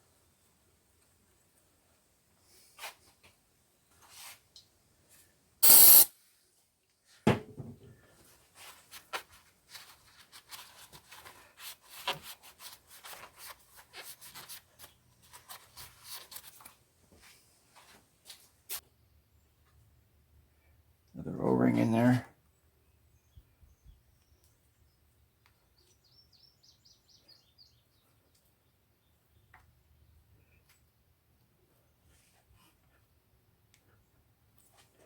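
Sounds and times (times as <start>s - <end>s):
short loud hiss: 5.6s - 6.2s.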